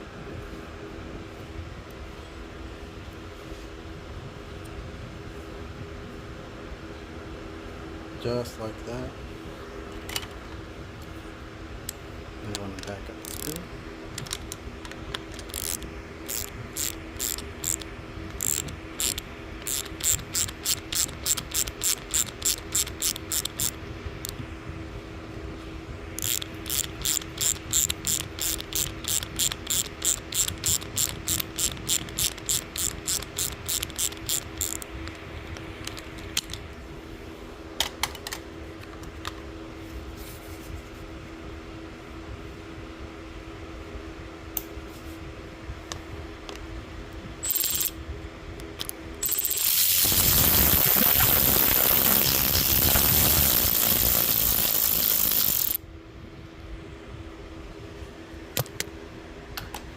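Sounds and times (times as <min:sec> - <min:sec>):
ratchet wrench clicking: 0:13.2 - 0:13.6, 0:15.1 - 0:24.4, 0:26.2 - 0:35.2, 0:35.8 - 0:36.6, 0:47.4 - 0:48.0, 0:48.8 - 0:55.8
loud steady rushing noise: 0:49.2 - 0:55.8.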